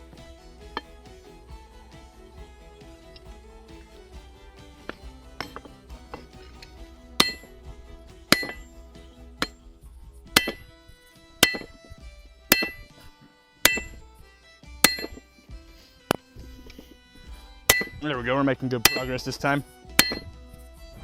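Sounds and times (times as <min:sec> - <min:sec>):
hammer striking metal: 0:02.7 - 0:09.6, 0:10.3 - 0:10.7, 0:11.4 - 0:11.8, 0:12.5 - 0:14.0, 0:14.8 - 0:15.2, 0:17.6 - 0:18.2, 0:18.8 - 0:20.4.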